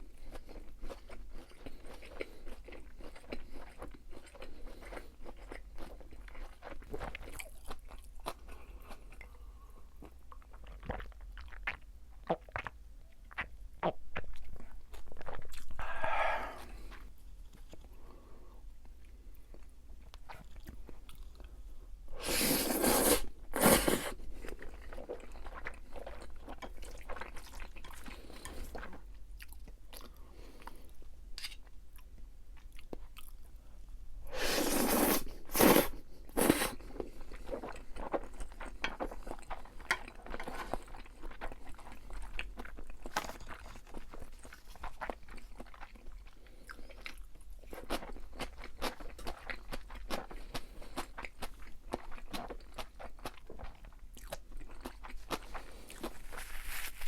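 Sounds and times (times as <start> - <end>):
chewing crispy fried food: 0.0 - 15.8, 22.4 - 33.7, 34.6 - 57.0.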